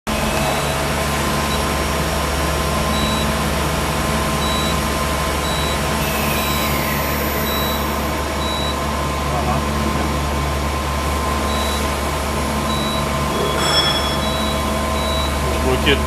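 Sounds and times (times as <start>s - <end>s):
short high beeps: 12.7s - 15.4s
falling whine: 12.7s - 15.9s.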